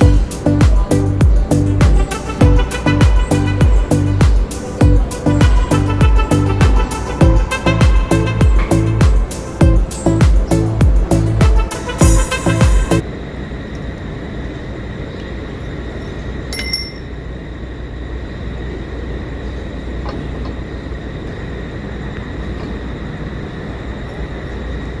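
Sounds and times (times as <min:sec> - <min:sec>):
metallic clink: 0:16.5 - 0:17.2.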